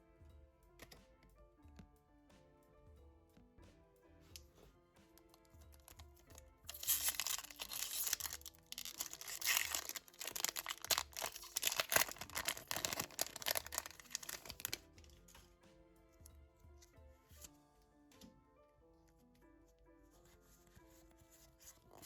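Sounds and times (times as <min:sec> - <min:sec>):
background music: 0:00.0 - 0:22.0
foil wrapper tearing and crackling: 0:05.8 - 0:06.0, 0:06.7 - 0:14.9.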